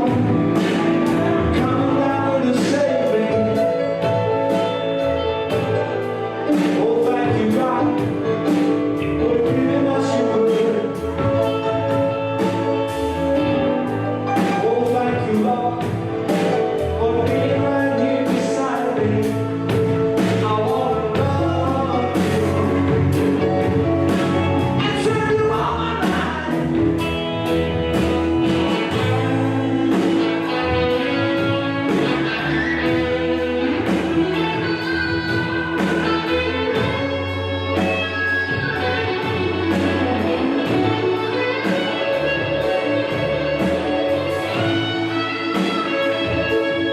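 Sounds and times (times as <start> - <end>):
guitar: 0.0 - 46.9
person singing gospel song: 24.2 - 27.0.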